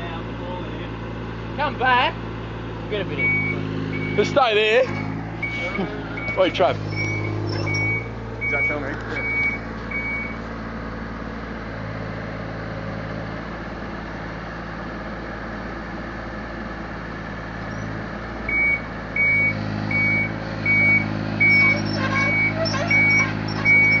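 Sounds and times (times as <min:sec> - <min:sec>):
diesel engine running: 0:00.0 - 0:24.0
travel alarm beeps: 0:03.2 - 0:10.4, 0:18.5 - 0:24.0.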